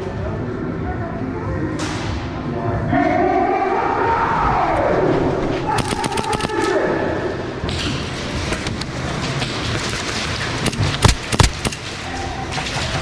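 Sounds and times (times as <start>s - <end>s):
scattered clicks: 5.7s - 6.8s, 8.4s - 12.0s
airsoft gunfire cracks: 5.8s - 6.8s, 10.7s - 12.0s
loud thumps: 10.6s - 12.0s.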